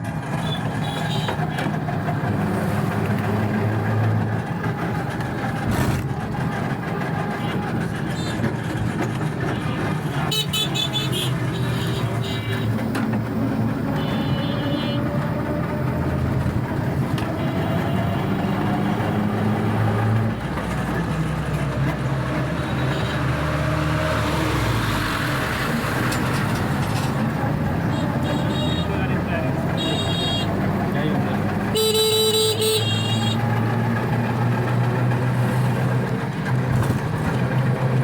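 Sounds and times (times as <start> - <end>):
vehicle engines running: 0.0 - 38.0
car horns: 0.3 - 1.9, 7.2 - 15.3, 16.8 - 19.7, 22.4 - 23.6, 27.6 - 34.4.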